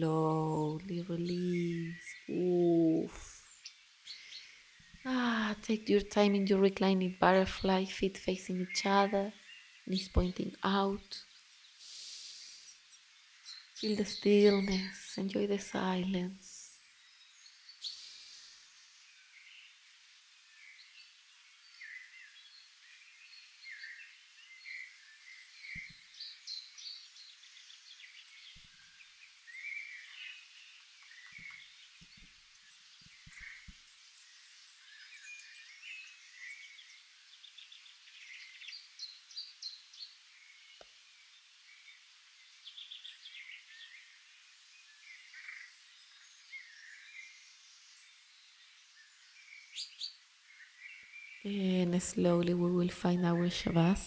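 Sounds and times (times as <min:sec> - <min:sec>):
birds chirping and trilling: 0:00.0 - 0:54.0.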